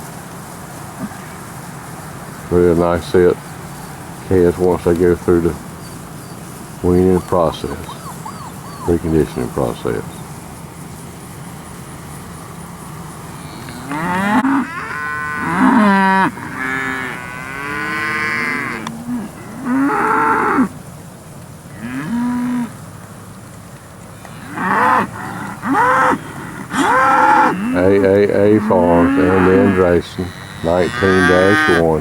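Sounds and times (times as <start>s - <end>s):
calves mooing: 4.6s - 10.2s, 13.3s - 20.7s, 21.7s - 22.7s, 24.2s - 32.0s.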